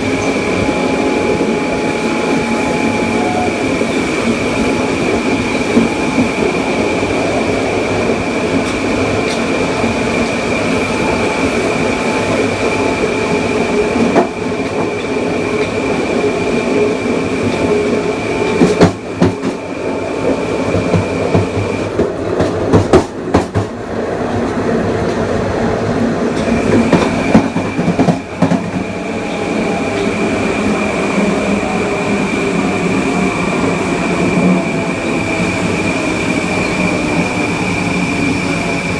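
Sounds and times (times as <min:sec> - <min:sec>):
inverter high whine: 0:00.0 - 0:08.6.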